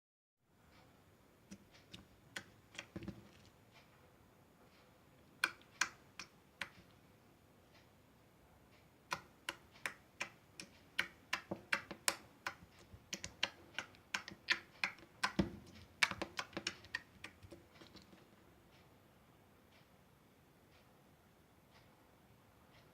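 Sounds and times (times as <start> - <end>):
slime squished with clicks and pops: 9.1 - 17.5.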